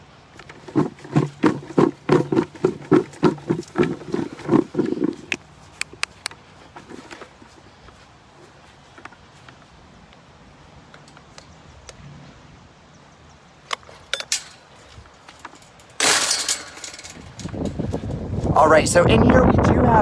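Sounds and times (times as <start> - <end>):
faint outdoor background: 0.0 - 20.0
sharp clicks and rattles: 0.4 - 7.4, 13.6 - 18.6.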